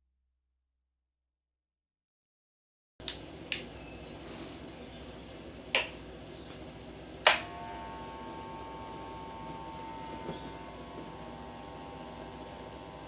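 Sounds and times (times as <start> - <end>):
faint steady hum: 3.0 - 13.0.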